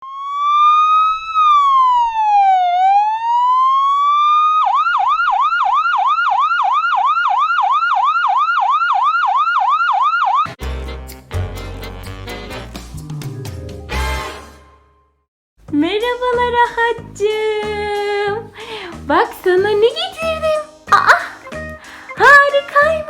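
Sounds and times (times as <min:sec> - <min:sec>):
police siren wailing and yelping: 0:00.0 - 0:10.5.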